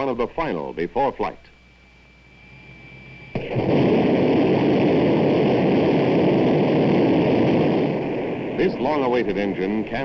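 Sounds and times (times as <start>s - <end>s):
rocket engine exhaust roar: 2.2s - 10.0s.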